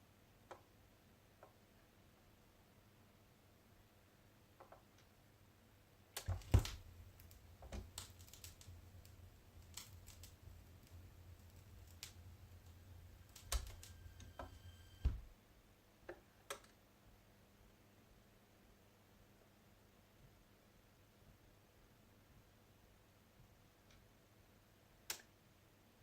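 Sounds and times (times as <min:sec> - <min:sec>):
mechanical clicks and knocks: 0:06.2 - 0:15.3.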